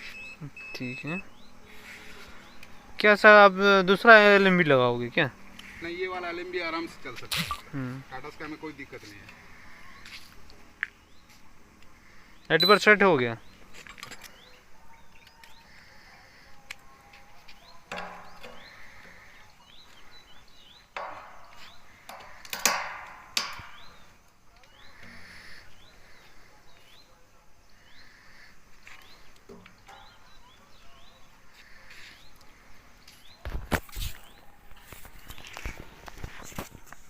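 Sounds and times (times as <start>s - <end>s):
short rising bird chirps: 12.4s - 13.1s
sharp knocks and clatters: 17.9s - 18.7s, 20.9s - 24.0s.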